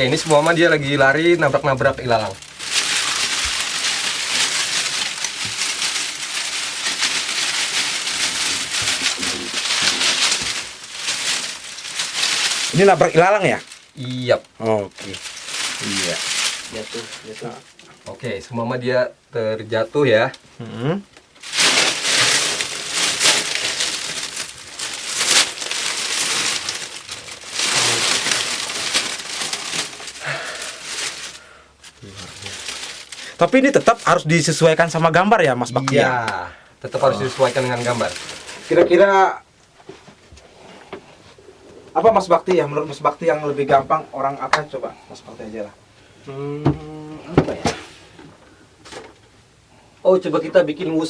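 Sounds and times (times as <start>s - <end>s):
grass rustling and swishing: 2.5s - 14.2s, 21.4s - 33.2s.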